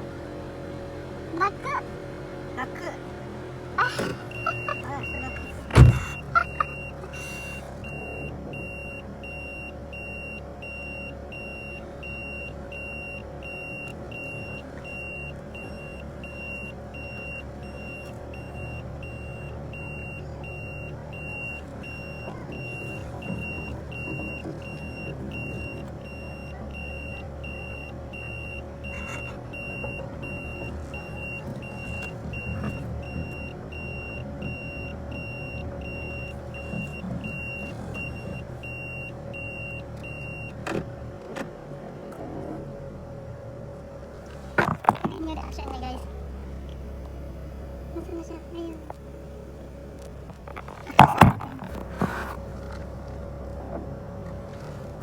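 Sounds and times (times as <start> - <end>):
car hum: 0.0 - 55.0
reverse warning beeper: 3.8 - 40.5.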